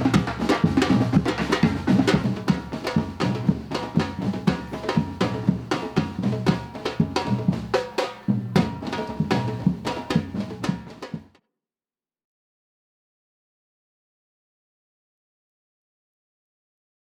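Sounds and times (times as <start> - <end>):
percussion ensemble drumming: 0.0 - 11.4.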